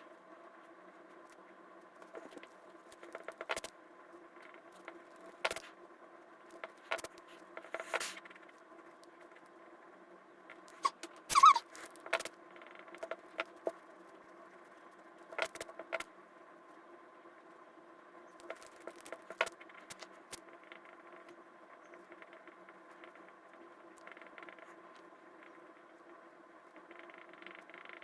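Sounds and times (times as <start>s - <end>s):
faint electrical hum: 0.0s - 28.0s.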